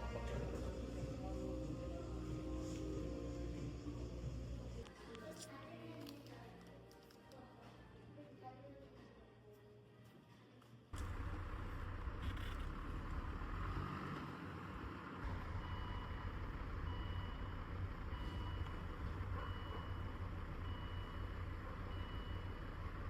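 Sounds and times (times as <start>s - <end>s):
vehicle engine rumbling: 0.0s - 4.9s, 11.0s - 23.0s
reversing warning beeps: 15.6s - 16.3s, 16.9s - 22.7s.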